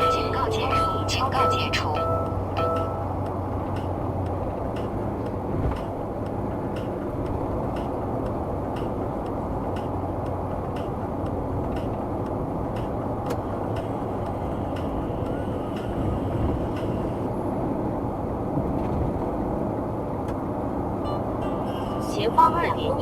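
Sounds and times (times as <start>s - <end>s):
regular ticking: 0.0s - 5.0s
car road and tyre noise: 0.0s - 23.0s.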